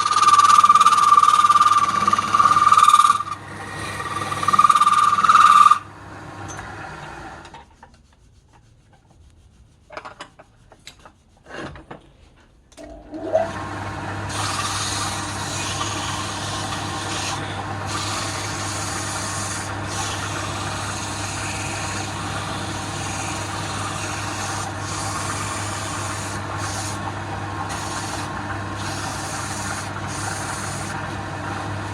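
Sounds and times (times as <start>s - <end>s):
tool squealing on spinning wood: 0.0s - 5.9s, 14.2s - 31.9s
lathe motor hum: 0.0s - 7.5s, 12.8s - 31.9s.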